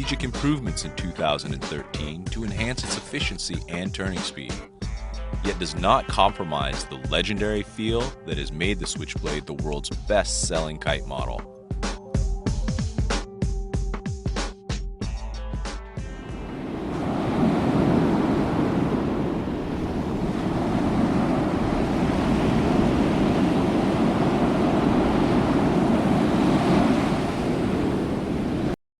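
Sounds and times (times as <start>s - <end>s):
surf: 16.0s - 28.8s
wind: 16.1s - 28.8s.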